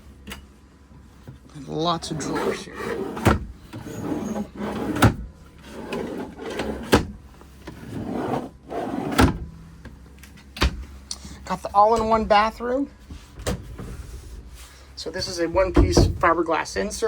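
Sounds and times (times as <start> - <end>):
drawers sliding open and shut: 2.0 - 9.5.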